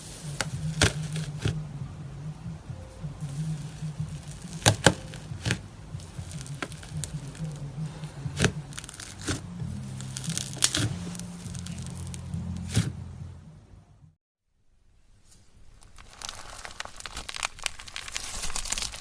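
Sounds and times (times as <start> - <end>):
slime crackling and popping: 0.0 - 1.6, 3.1 - 13.0, 15.6 - 19.0.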